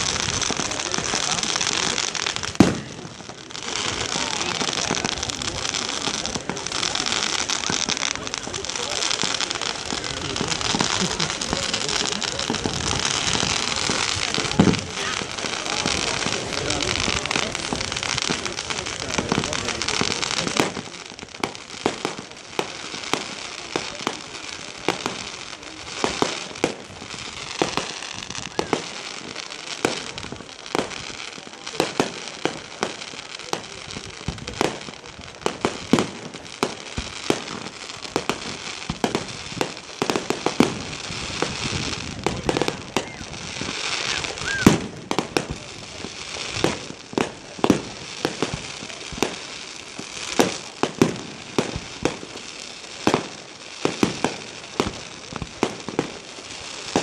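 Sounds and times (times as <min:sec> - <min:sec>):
fireworks bangs: 0:00.0 - 0:57.0
fireworks crackle and hiss: 0:00.0 - 0:57.0
firework whistle: 0:26.0 - 0:29.4, 0:40.6 - 0:45.0.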